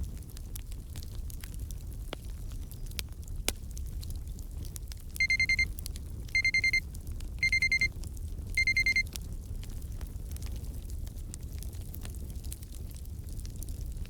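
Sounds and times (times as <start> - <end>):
crackling fireplace: 0.0 - 14.0
digital timer alarm beeps: 5.2 - 5.6, 6.4 - 6.8, 7.4 - 7.9, 8.6 - 9.0.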